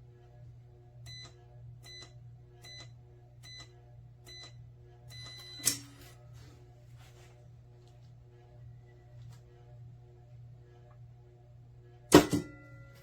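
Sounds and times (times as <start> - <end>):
loud clunk: 12.1 - 12.6.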